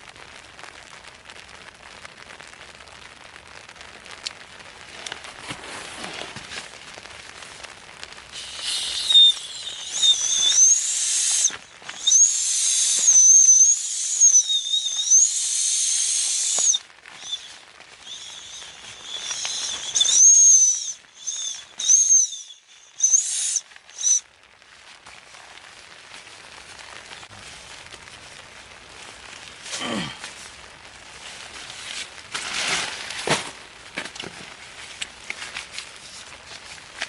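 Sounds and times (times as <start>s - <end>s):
steam whistling from firewood: 8.3s - 24.2s.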